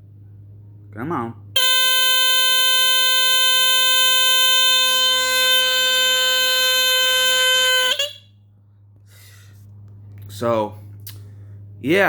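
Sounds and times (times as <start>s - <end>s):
smoke alarm buzzing tone: 1.6s - 8.4s.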